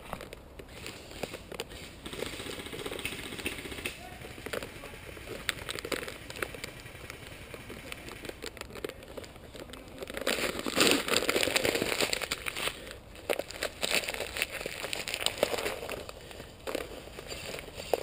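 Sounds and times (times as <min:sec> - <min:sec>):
twigs snapping: 0:03.0 - 0:18.0
rustling through dry leaves: 0:09.4 - 0:18.0.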